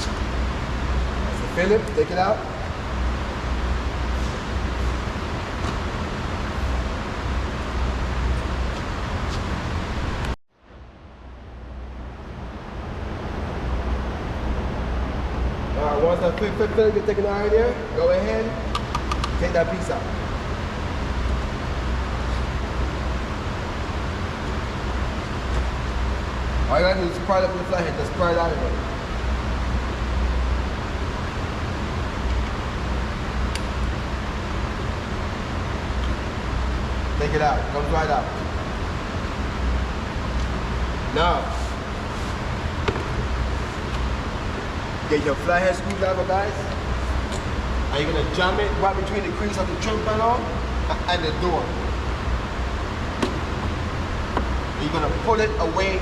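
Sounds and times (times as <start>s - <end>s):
outdoor rumble and hiss: 0.0s - 56.0s.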